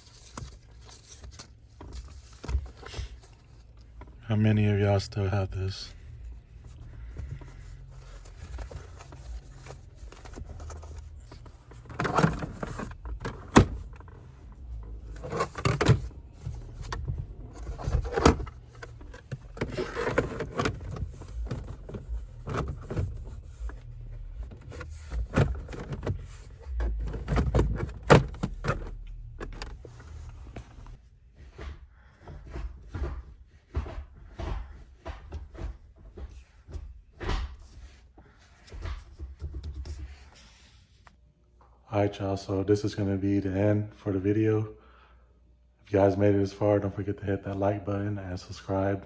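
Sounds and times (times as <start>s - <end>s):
clicks and clunks of handling: 6.6s - 37.8s.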